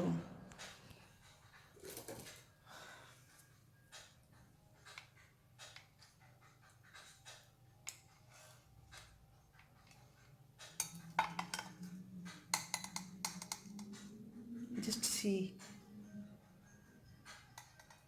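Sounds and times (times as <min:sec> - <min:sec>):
music: 0:00.0 - 0:18.0
faint clicks and taps: 0:03.3 - 0:14.7, 0:17.1 - 0:18.0.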